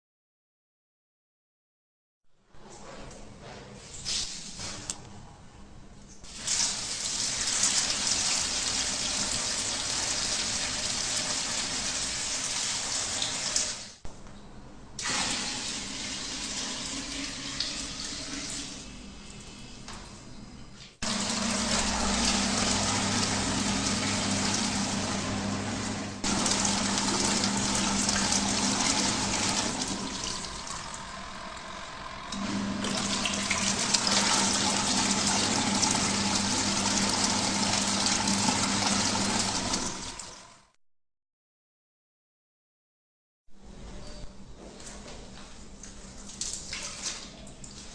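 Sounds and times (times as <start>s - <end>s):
water running into tub: 6.3s - 14.0s, 15.0s - 19.4s, 21.0s - 40.6s
motor hum: 21.0s - 40.6s.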